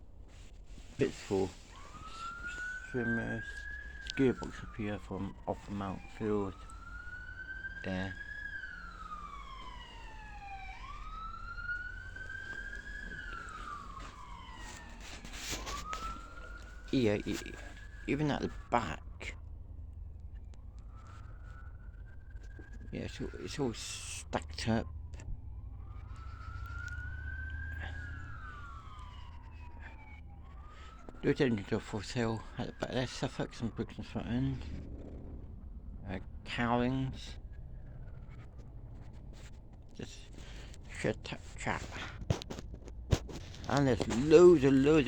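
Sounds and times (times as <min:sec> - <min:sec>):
emergency siren wailing: 0:00.0 - 0:45.0
steady low rumble: 0:33.6 - 0:45.0.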